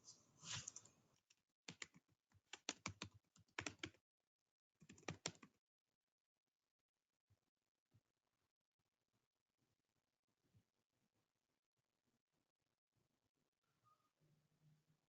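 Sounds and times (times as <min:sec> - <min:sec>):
computer keyboard typing: 0:01.7 - 0:04.0, 0:04.8 - 0:05.5.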